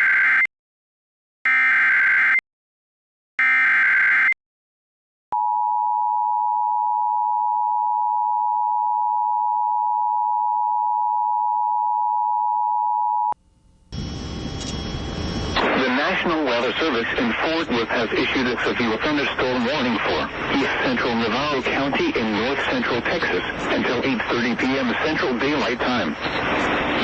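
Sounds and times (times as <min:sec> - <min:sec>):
hissy broadcast audio: 0:13.4 - 0:27.0.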